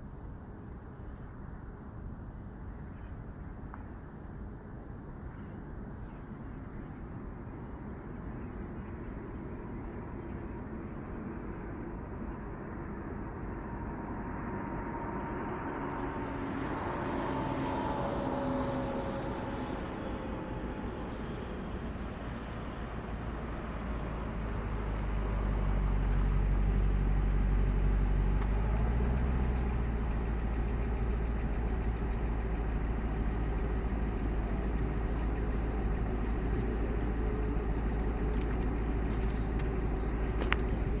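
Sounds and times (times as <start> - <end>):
car engine running: 8.4 - 41.0.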